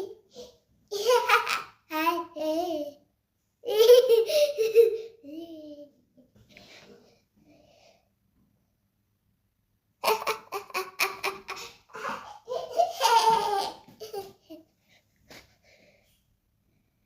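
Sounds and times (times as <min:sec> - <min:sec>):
baby laughing: 0:00.0 - 0:03.0, 0:03.6 - 0:05.9, 0:10.0 - 0:14.6.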